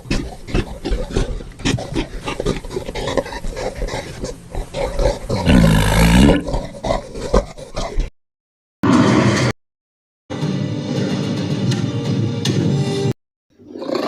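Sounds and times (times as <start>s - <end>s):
rough animal sounds: 0.0s - 8.1s
creature roaring: 4.8s - 7.9s, 8.8s - 9.5s, 13.6s - 14.0s.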